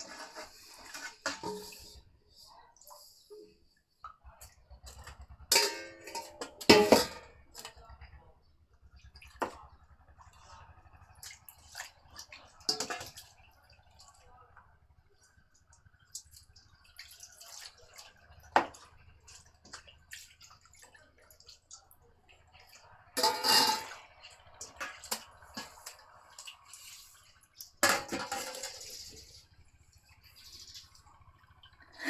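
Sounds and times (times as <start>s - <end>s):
containers and utensils clinking: 0.0s - 3.5s, 4.8s - 8.0s, 11.6s - 13.5s, 22.6s - 29.4s.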